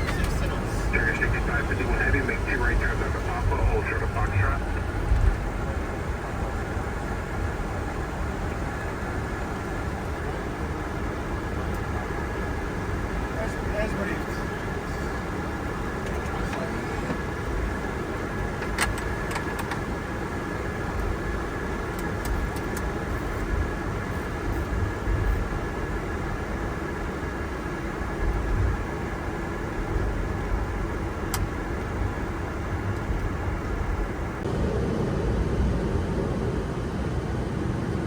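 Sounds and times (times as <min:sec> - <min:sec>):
thin steady whine: 0:00.0 - 0:28.2
low cockpit rumble: 0:00.0 - 0:38.0.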